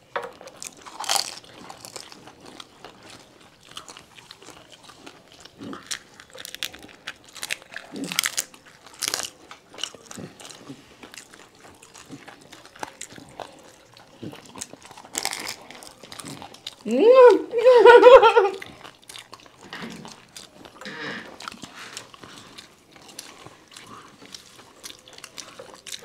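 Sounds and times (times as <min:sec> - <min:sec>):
chewing: 0:00.0 - 0:17.0, 0:18.3 - 0:26.0
crisp shells crunching: 0:00.5 - 0:16.9.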